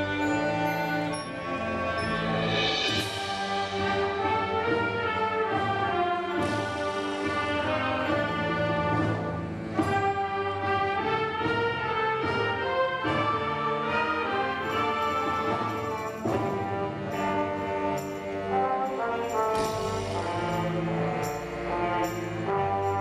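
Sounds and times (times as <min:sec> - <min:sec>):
sharp cymbal crash: 0:02.2 - 0:04.4.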